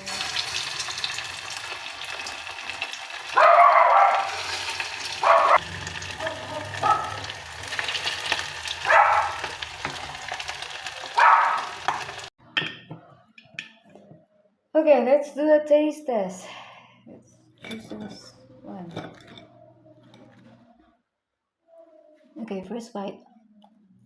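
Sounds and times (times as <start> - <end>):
meatballs sizzling in hot oil: 0.0 - 3.4, 4.1 - 12.3.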